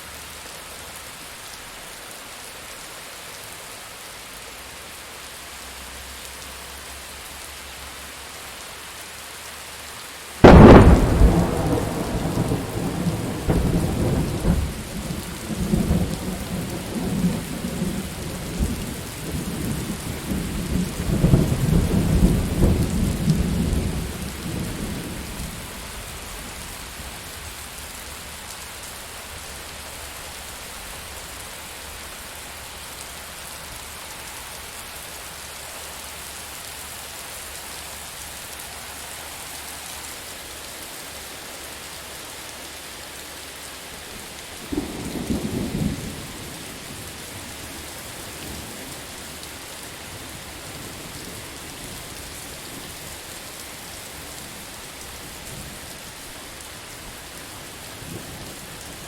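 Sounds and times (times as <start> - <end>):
heavy rain: 0.0 - 59.0
thunder crack and rumble: 10.4 - 25.4.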